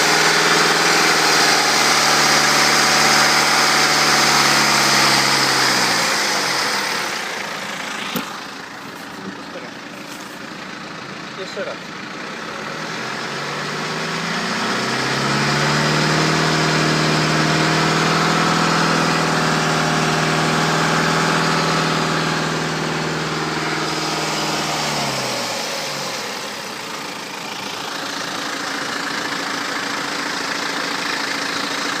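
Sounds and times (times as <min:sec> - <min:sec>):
diesel engine revving: 0:00.0 - 0:32.0.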